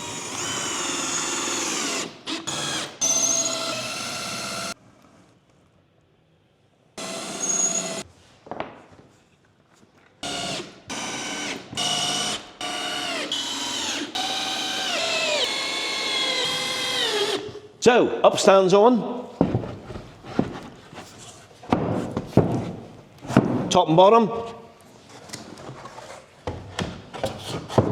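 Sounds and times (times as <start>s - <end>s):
power drill driving screws: 0.0s - 4.8s, 7.0s - 8.0s, 10.2s - 17.5s.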